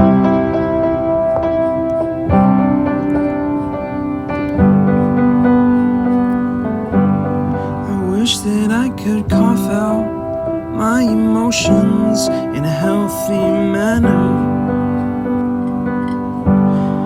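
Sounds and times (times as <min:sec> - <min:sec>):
piano playing slow chords: 0:00.0 - 0:17.0.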